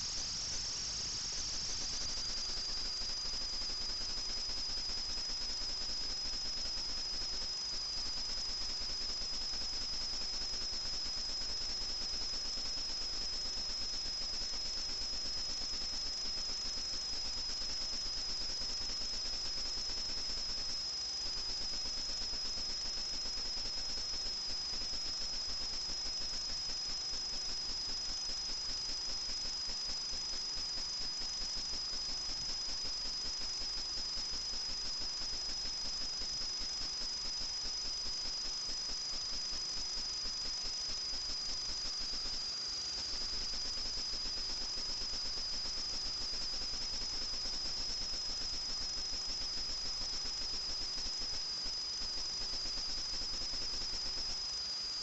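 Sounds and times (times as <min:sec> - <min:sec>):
hiss: 0:00.0 - 0:08.5.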